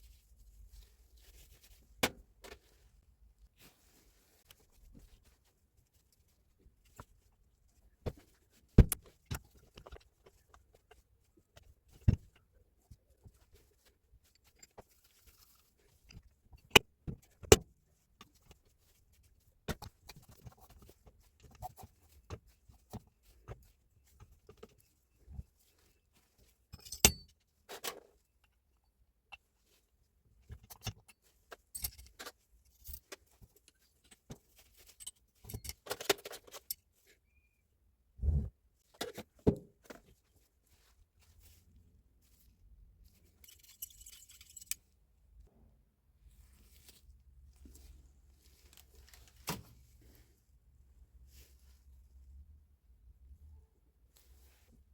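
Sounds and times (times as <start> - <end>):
metal parts and tools clinking: 26.7 - 28.0, 30.6 - 36.8, 43.2 - 44.9.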